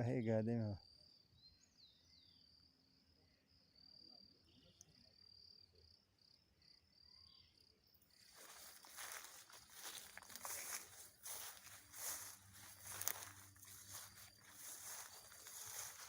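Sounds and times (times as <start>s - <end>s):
rustling footsteps: 8.2s - 16.0s.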